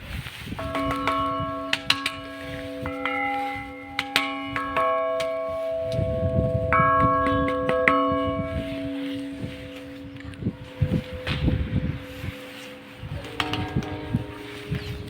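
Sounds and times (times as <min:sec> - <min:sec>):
church bells ringing: 0:00.4 - 0:15.0.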